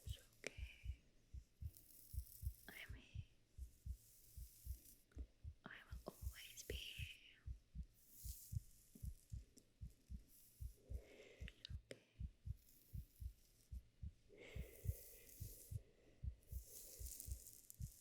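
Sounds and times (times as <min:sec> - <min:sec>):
soft heartbeat thumps: 0:00.0 - 0:18.0
soft breathy shushing: 0:10.1 - 0:18.0.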